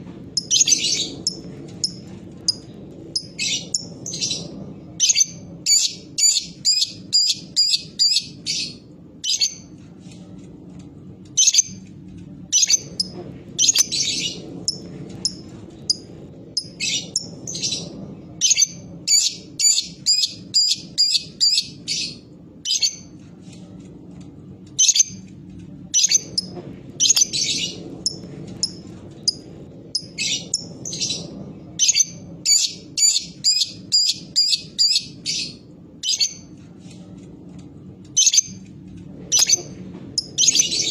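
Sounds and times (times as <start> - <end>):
lovebird high chirps: 0.4 - 2.6, 5.0 - 9.6, 18.4 - 23.0, 31.8 - 36.4.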